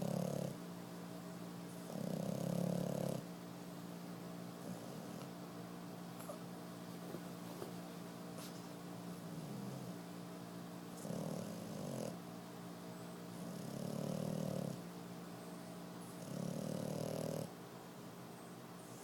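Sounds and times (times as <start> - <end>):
puppy snoring: 0.0 - 0.6, 1.7 - 3.3, 4.6 - 5.4, 9.2 - 10.0, 11.0 - 12.2, 13.3 - 14.8, 16.0 - 17.6.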